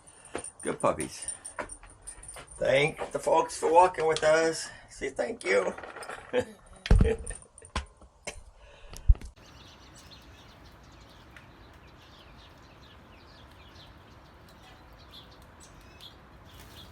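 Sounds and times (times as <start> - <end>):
outdoor background hiss: 0.0 - 16.9
small birds chirping: 8.7 - 16.9.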